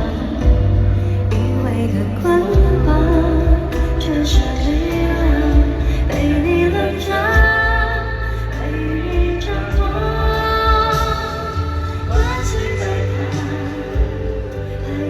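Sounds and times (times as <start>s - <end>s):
band with steady bass: 0.0s - 15.0s
woman singing pop ballad: 0.0s - 15.0s.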